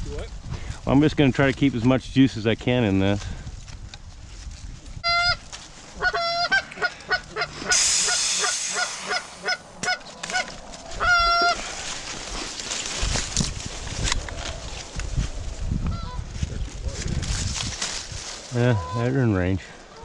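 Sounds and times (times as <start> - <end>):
geese honking: 5.0 - 12.1, 18.6 - 20.0
goose hissing: 6.5 - 10.0.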